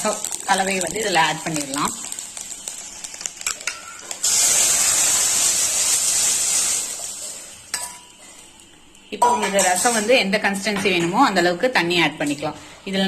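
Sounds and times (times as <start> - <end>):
leaves crackling in hot oil: 0.0 - 10.1
loud sizzle in hot oil: 0.0 - 10.3.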